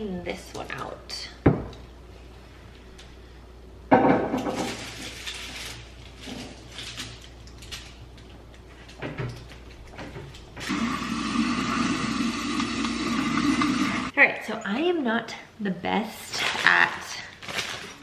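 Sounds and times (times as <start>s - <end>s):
small knocks and rustles: 4.2s - 10.6s
rustle and clatter: 4.4s - 10.6s.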